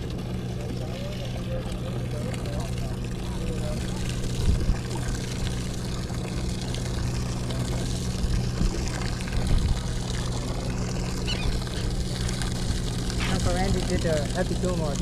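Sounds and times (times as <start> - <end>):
boat engine humming: 0.0 - 15.0
water noise: 0.0 - 15.0.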